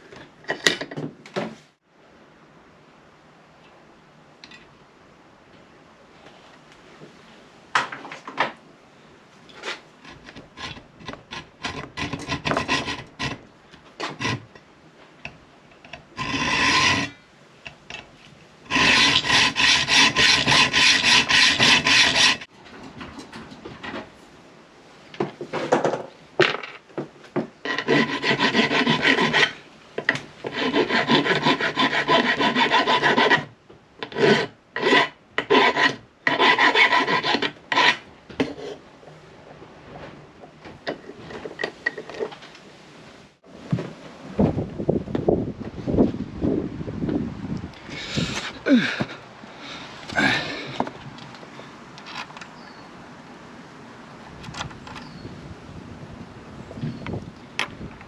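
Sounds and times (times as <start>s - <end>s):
hacksaw cutting metal bolt: 10.1s - 13.4s, 18.7s - 22.4s.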